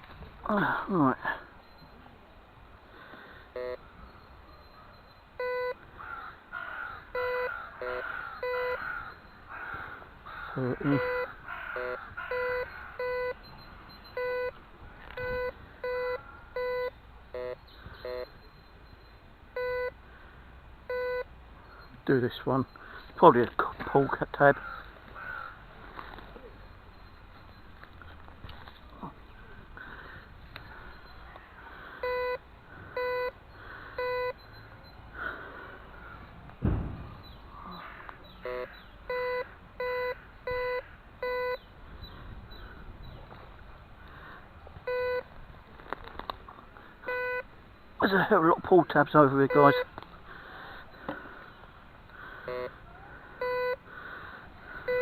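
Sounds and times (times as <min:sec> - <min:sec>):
metal detector beeps: 0:03.5 - 0:05.8, 0:07.1 - 0:09.3, 0:10.8 - 0:20.0, 0:20.9 - 0:24.2, 0:32.0 - 0:32.4, 0:33.0 - 0:33.4, 0:34.0 - 0:35.4, 0:38.4 - 0:41.7, 0:44.9 - 0:45.3, 0:47.0 - 0:47.5, 0:49.3 - 0:49.9, 0:52.4 - 0:52.8, 0:53.4 - 0:53.8, 0:54.8 - 0:55.0
metal detector warbling tone: 0:10.8 - 0:14.6
heavy thud: 0:36.6 - 0:37.4.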